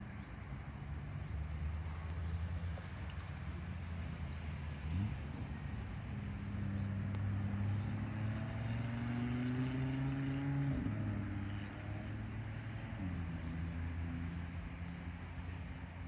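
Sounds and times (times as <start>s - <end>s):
engine humming: 1.8s - 9.4s.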